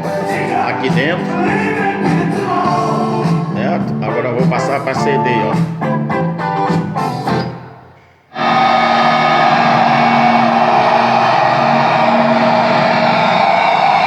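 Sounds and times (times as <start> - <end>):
dense music from speakers: 0.0 - 7.5
plucked guitar music: 0.0 - 7.9.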